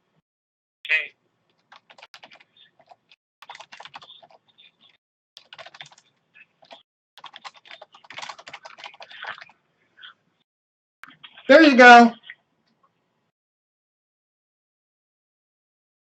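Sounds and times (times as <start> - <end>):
computer keyboard typing: 1.5 - 9.6.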